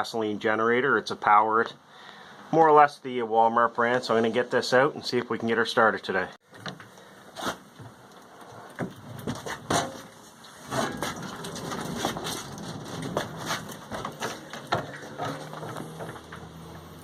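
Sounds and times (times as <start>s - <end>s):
rough shuffling noise: 7.3s - 16.7s
equipment clattering and knocking: 8.8s - 16.9s.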